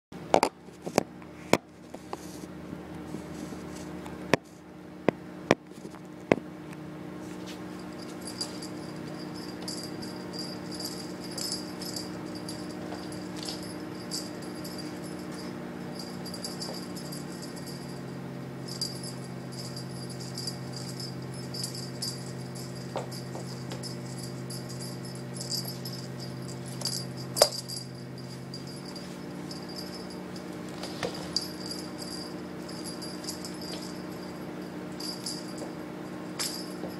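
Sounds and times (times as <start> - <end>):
steady low hum: 0.2 - 36.9
cat toy jingling and rattling: 7.7 - 36.9.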